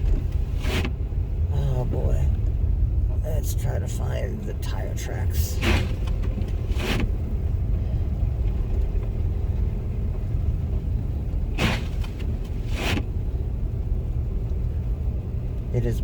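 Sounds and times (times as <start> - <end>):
windshield wipers sweeping: 0.0 - 1.1, 5.4 - 7.5, 8.4 - 13.4
road and engine rumble: 0.0 - 16.0.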